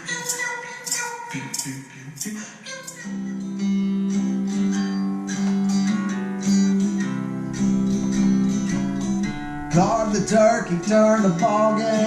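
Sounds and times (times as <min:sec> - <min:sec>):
acoustic guitar strumming: 0:00.0 - 0:12.0
bass line: 0:07.3 - 0:12.0.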